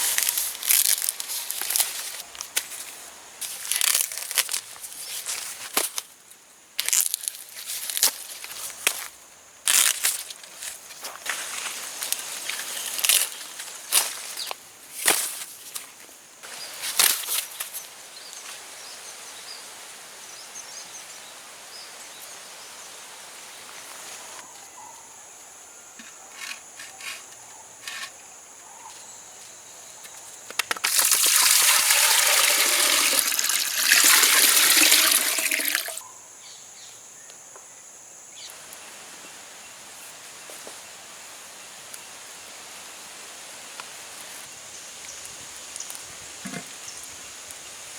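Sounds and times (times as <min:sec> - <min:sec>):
outdoor background noise: 0:00.0 - 0:47.9
water splashing: 0:30.9 - 0:36.0.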